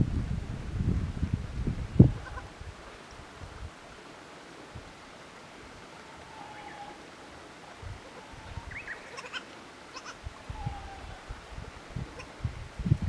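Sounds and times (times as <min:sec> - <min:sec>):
goat kids bleating: 0:09.1 - 0:10.2.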